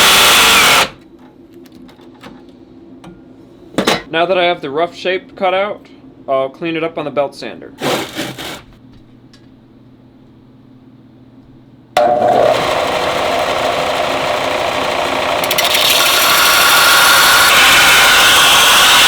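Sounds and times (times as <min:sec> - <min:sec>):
belt sander grinding steel: 0:00.0 - 0:01.0, 0:12.0 - 0:19.0.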